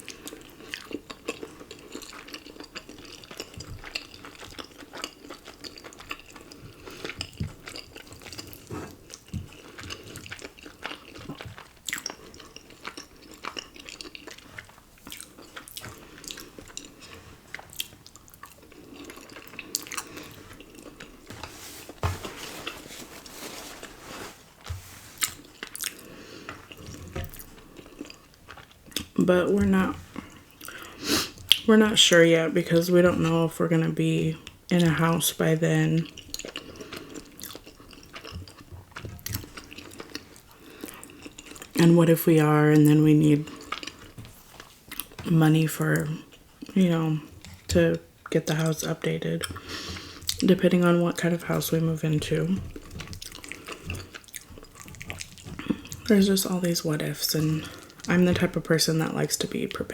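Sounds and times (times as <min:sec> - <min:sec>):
person chewing noodles: 0:00.0 - 0:29.2, 0:30.0 - 0:31.6, 0:36.0 - 0:41.8, 0:43.4 - 0:45.2, 0:49.4 - 0:50.4, 0:52.6 - 0:56.1, 0:57.6 - 0:58.1.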